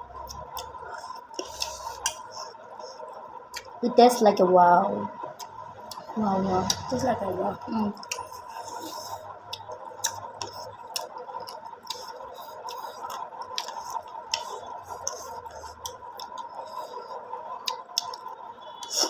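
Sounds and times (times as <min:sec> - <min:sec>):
faint steady hum: 0:00.0 - 0:19.0
chewing clicks and smacks: 0:00.2 - 0:02.3, 0:09.4 - 0:19.0.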